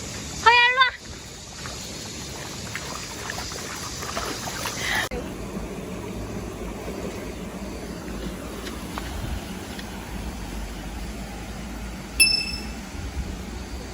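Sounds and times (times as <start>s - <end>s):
stream water running: 0.0s - 13.9s
low steady rumble: 5.1s - 13.9s.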